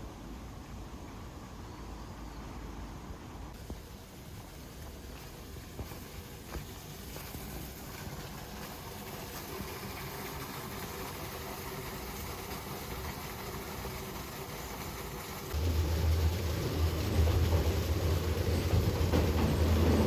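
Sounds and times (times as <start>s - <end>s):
vehicle engine running: 15.6s - 20.0s.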